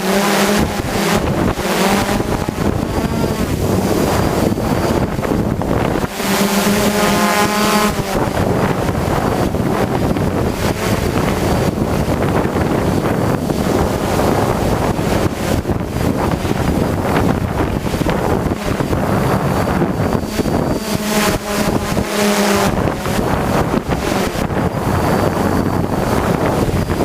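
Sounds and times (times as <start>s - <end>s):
drone motors humming: 0.0s - 27.0s
strong wind buffeting microphone: 0.0s - 27.0s.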